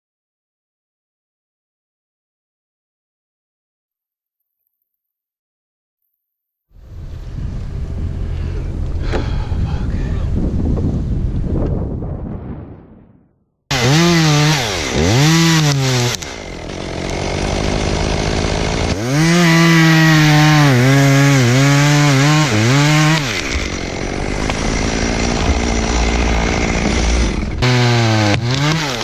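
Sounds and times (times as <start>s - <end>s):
chainsaw revving: 13.7s - 29.0s.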